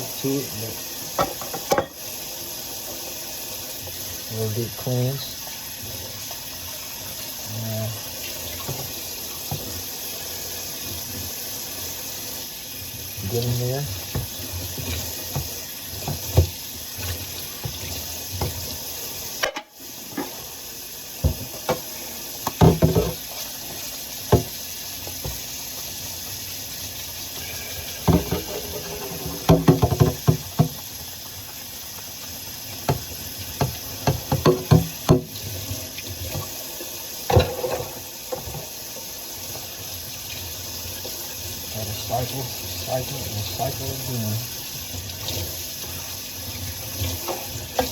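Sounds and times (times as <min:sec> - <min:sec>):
tap water running into sink: 0:00.0 - 0:47.9
crockery clinking and knocking: 0:27.6 - 0:30.7.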